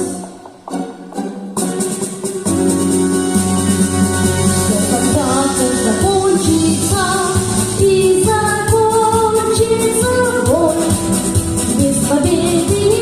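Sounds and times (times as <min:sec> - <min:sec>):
instrumental backing with beat: 0:00.0 - 0:13.0
person singing: 0:04.4 - 0:11.1.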